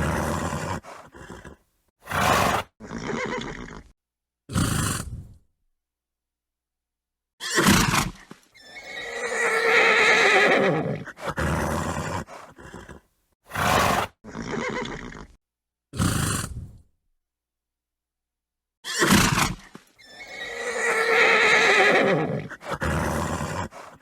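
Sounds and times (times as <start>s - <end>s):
horse snorting: 0.0s - 3.9s, 4.5s - 5.4s, 7.6s - 15.4s, 16.0s - 16.8s, 18.9s - 24.0s
horse whinnying: 0.0s - 3.9s, 7.4s - 15.4s, 18.8s - 23.9s.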